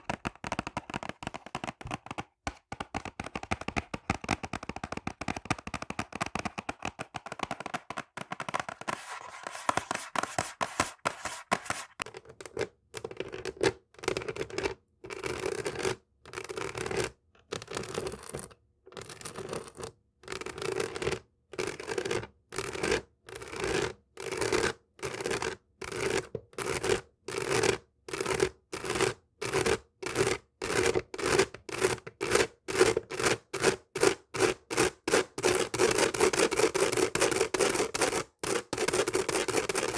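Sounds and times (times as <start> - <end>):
fingernails scratching: 8.5 - 12.0.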